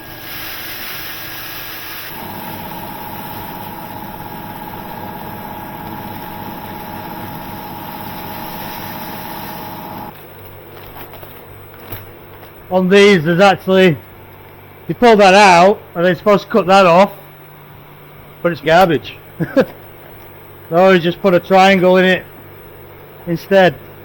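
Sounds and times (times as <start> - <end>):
gravel pouring into vessel: 0.0 - 10.2.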